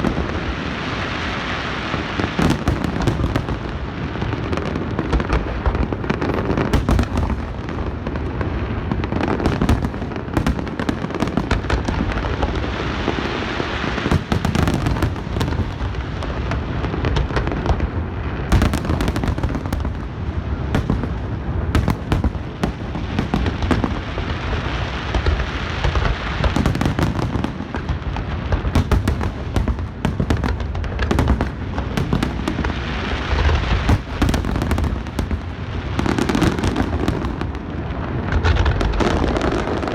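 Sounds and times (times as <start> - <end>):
fireworks booming and crackling: 0.0 - 39.9.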